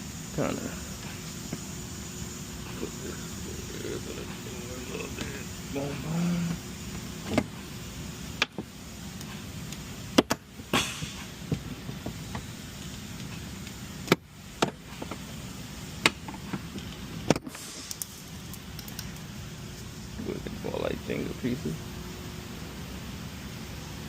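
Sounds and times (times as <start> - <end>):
low background hum: 0.0 - 24.0.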